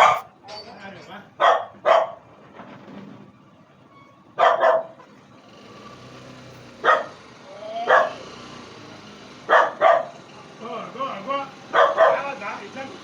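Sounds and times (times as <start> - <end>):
dog barking: 0.0 - 0.3, 1.4 - 2.2, 4.4 - 5.1, 6.8 - 7.2, 7.8 - 8.3, 9.5 - 10.2, 11.7 - 12.4.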